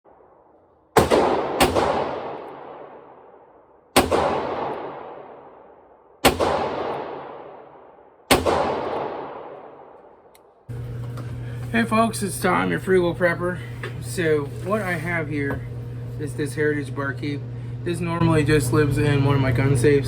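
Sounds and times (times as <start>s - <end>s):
revolver shots echoing: 0.1s - 10.3s.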